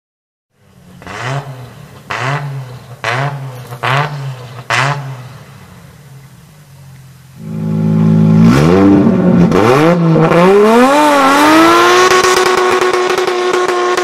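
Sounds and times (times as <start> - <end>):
car engine idling: 0.5 - 11.4
car engine revving: 0.6 - 14.0.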